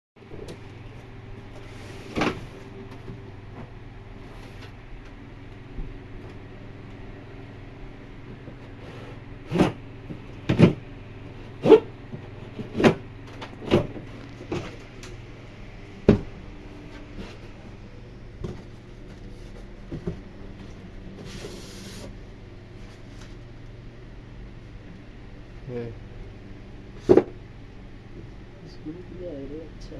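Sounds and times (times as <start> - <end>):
steady low hum: 0.2 - 29.9
knocks and thumps: 16.0 - 16.4.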